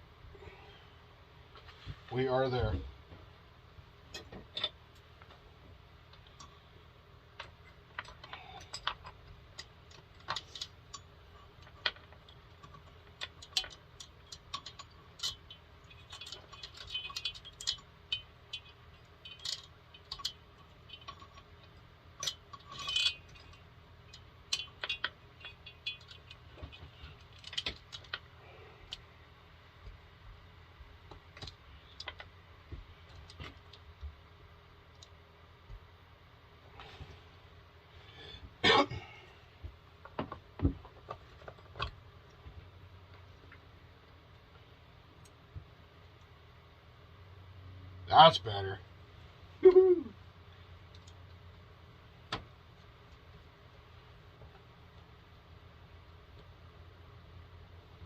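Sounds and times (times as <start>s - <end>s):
steady low hum: 0.0s - 58.0s
metallic clicks and clinks: 7.4s - 28.3s.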